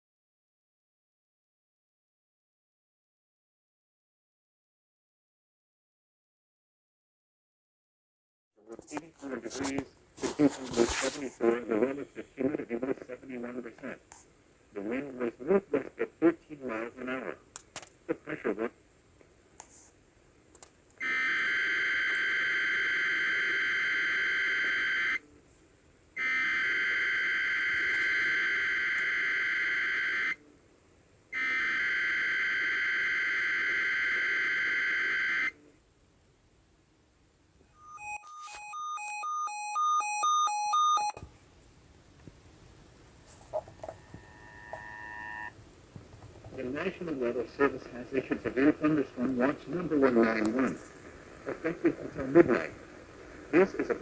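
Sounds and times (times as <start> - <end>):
alternating alert beeps: 37.8 - 41.2, 44.0 - 45.5
digital data tones: 43.8 - 45.5.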